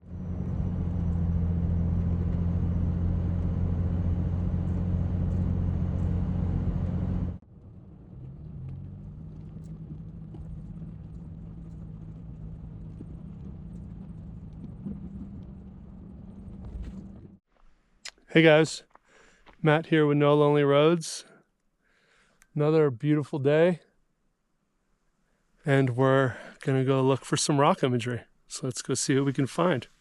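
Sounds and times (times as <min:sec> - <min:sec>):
vehicle engine droning: 0:00.0 - 0:17.4
quieter low engine hum: 0:00.0 - 0:17.7.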